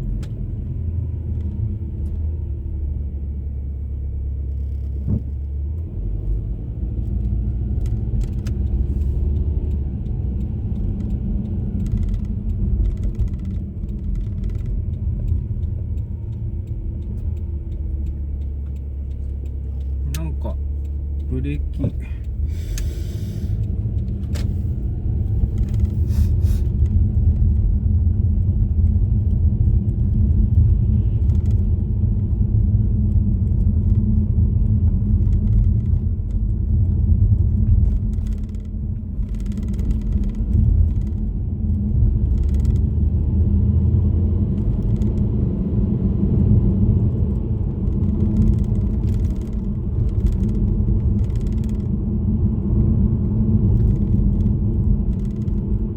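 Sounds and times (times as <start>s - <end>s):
car road and engine rumble: 0.0s - 55.9s.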